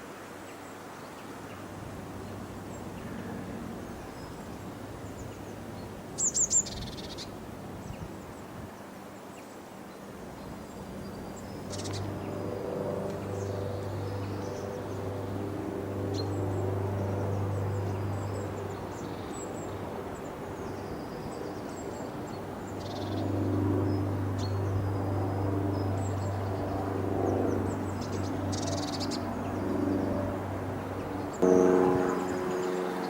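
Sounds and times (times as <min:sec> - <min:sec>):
low mechanical hum: 0:10.2 - 0:33.0.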